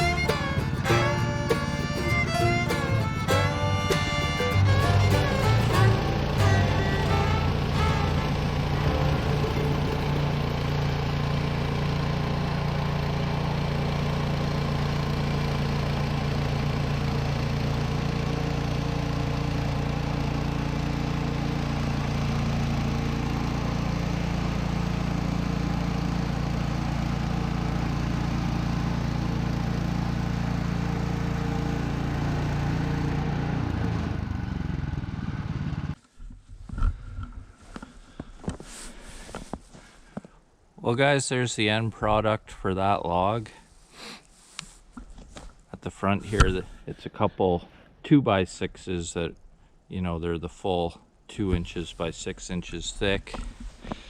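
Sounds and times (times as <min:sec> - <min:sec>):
gas engine running: 0:00.0 - 0:36.0.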